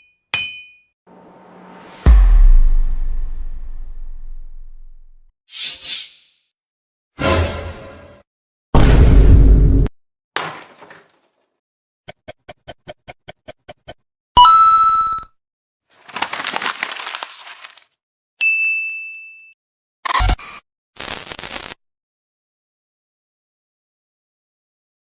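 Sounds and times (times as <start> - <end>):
clear ding: 18.4 - 19.5.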